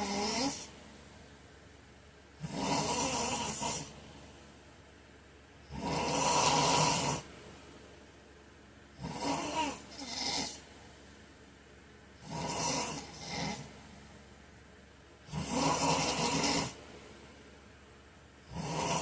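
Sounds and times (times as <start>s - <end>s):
man snoring: 0.0s - 0.7s, 2.4s - 4.0s, 5.7s - 7.3s, 9.0s - 10.6s, 12.2s - 13.7s, 15.3s - 16.8s, 18.5s - 19.0s.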